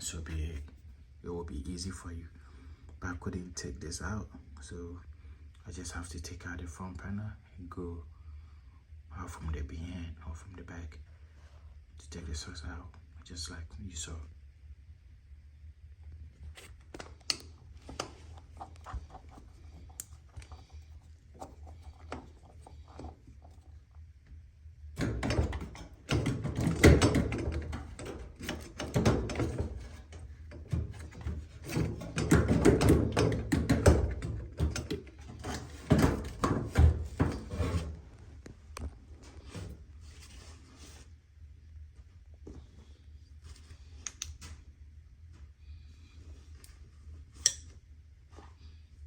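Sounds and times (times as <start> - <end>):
clattering and rubbing of parts: 16.4 - 24.0, 24.8 - 41.2.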